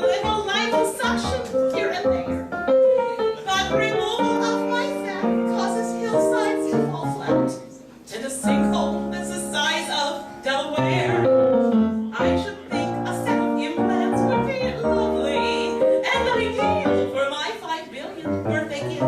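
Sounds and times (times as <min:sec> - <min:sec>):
piano accompaniment: 0:00.0 - 0:19.0
woman singing: 0:12.2 - 0:19.0.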